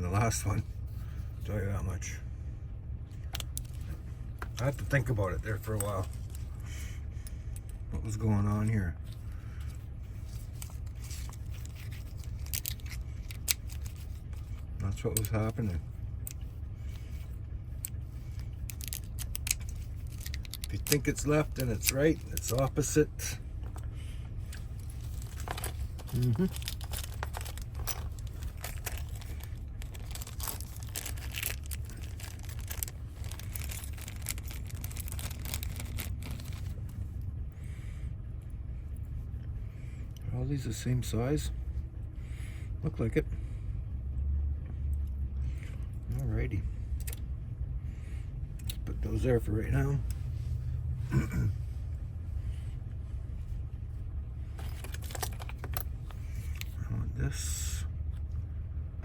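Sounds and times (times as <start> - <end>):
steady low hum: 0.0 - 59.0
light clicks of lock parts: 3.2 - 4.7, 54.6 - 56.8
clicks of lock parts handled: 10.4 - 15.5, 54.6 - 56.8.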